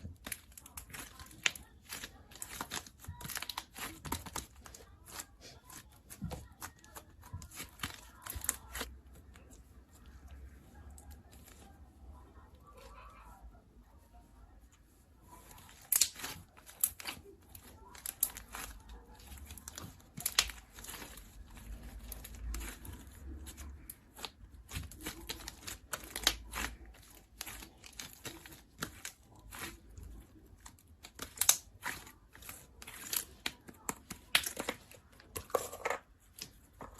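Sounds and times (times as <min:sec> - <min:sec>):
slime crackling and popping: 0:00.0 - 0:09.4, 0:15.4 - 0:35.5.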